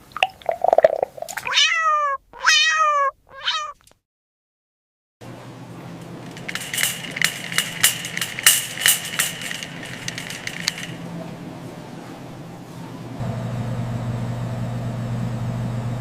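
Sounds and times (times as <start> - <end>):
low hum: 5.3 - 16.0
cat crunching dry food: 6.0 - 11.0.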